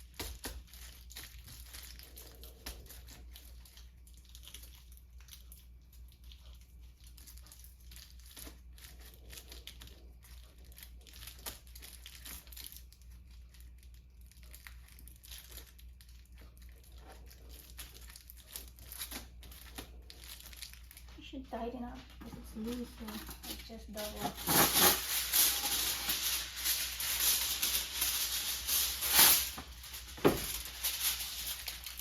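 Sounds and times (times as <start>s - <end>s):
aluminium foil crinkling: 0.0s - 32.0s.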